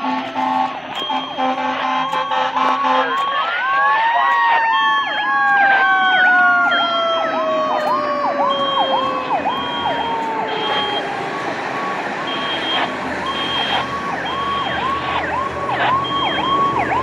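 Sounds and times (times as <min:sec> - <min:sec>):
electronic siren yelping: 0:00.0 - 0:17.0
high beeping tone: 0:00.2 - 0:03.5, 0:08.5 - 0:11.1, 0:11.8 - 0:14.9
mechanical siren winding down: 0:02.7 - 0:17.0.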